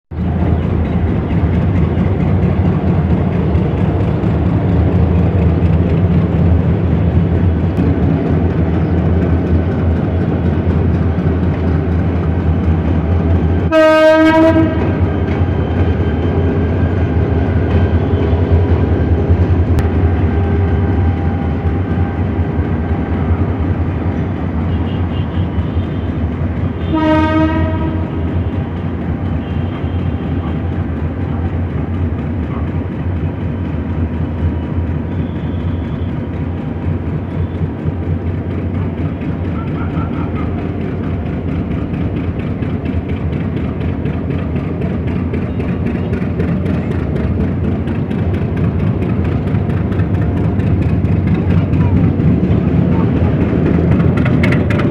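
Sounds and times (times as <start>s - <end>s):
diesel locomotive engine hum: 0.0s - 54.9s
train horn blasts: 13.6s - 16.6s, 19.8s - 23.7s, 24.6s - 30.9s.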